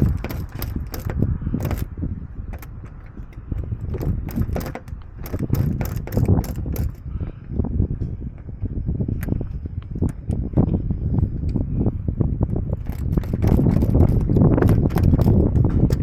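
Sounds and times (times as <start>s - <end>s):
lock tools clicking and rattling: 0.0s - 7.1s, 12.5s - 16.0s
low steady rumble: 0.0s - 16.0s.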